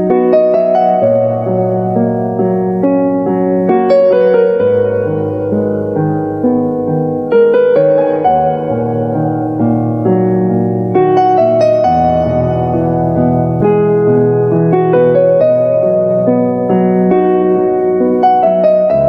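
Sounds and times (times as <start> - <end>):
slow gentle piano music: 0.0 - 19.0.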